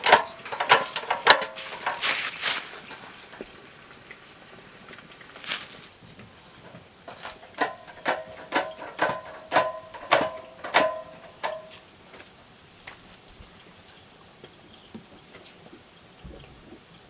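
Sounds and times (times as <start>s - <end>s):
metal utensil striking cookware: 0.0s - 2.1s, 7.1s - 11.8s.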